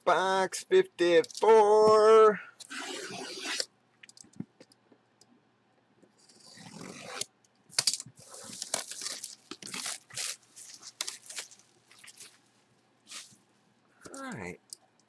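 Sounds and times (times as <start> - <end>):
packaging tearing and crinkling: 6.8 - 12.4.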